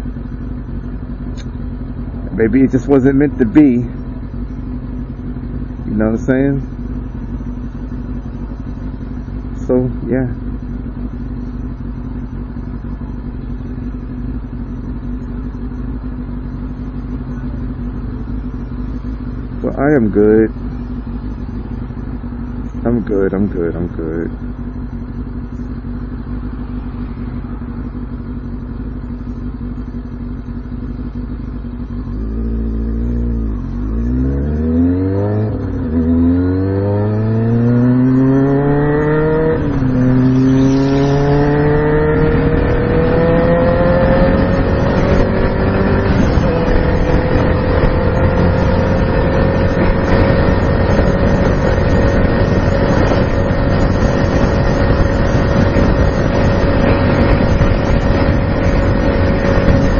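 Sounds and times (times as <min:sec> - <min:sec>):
motorcycle engine accelerating: 0:00.0 - 0:59.9
rushing wind noise: 0:34.8 - 0:59.9.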